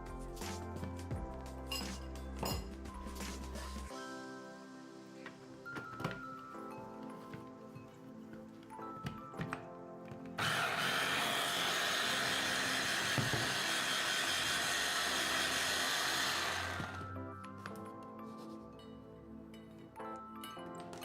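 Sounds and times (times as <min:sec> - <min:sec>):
food processor running: 0:10.4 - 0:17.1.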